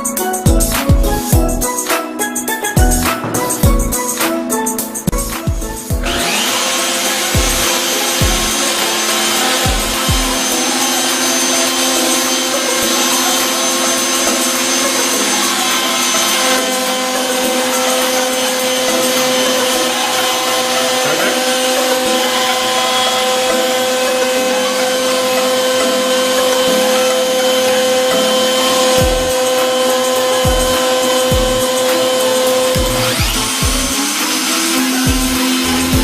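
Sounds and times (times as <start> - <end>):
router whining: 0.0 - 36.0
router cutting wood: 0.7 - 36.0.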